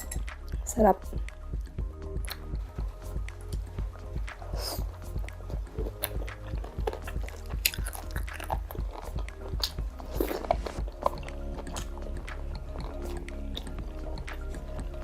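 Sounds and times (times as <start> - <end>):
person chewing ribs: 4.4 - 15.0.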